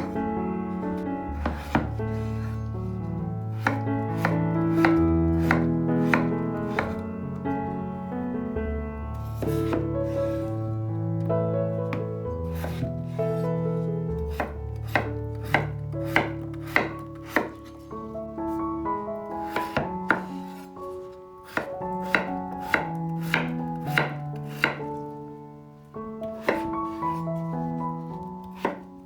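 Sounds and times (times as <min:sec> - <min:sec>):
background music: 0:00.0 - 0:29.0
knife chopping on cutting board: 0:01.4 - 0:02.6, 0:03.6 - 0:07.0, 0:09.4 - 0:09.9, 0:11.9 - 0:12.9, 0:14.3 - 0:17.7, 0:19.5 - 0:20.6, 0:21.5 - 0:25.0, 0:26.4 - 0:27.0, 0:28.4 - 0:28.9.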